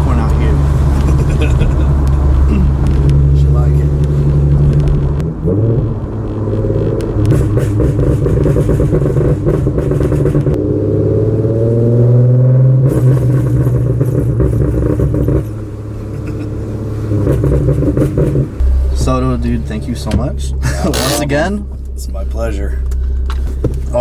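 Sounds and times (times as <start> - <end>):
exhaust crackles and pops: 0.0 - 10.6, 12.8 - 24.0
car engine revving: 0.0 - 24.0.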